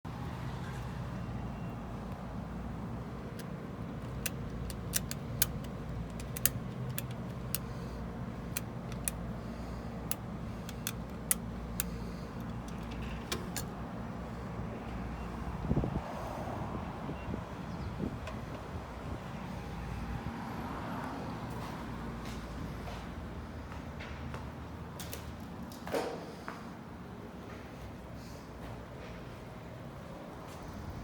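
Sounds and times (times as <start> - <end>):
low mechanical hum: 0.1 - 20.4
sharp irregular clicks: 3.3 - 13.7.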